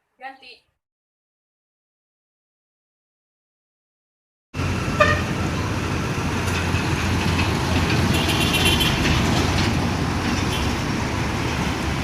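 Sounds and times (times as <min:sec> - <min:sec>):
road traffic: 0:04.6 - 0:12.0.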